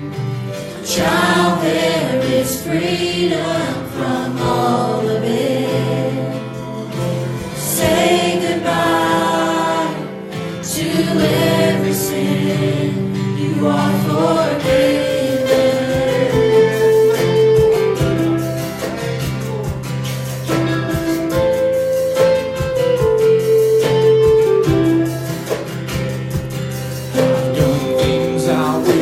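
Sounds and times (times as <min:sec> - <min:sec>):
strummed guitar: 0:00.0 - 0:29.0
person singing with held notes: 0:07.6 - 0:19.7, 0:27.2 - 0:29.0.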